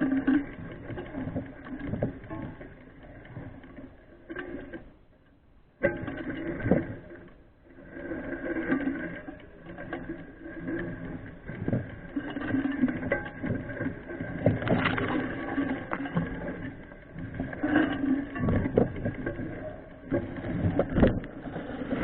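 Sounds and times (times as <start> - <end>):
mountain bike rattling on rough trail: 8.0 - 22.0.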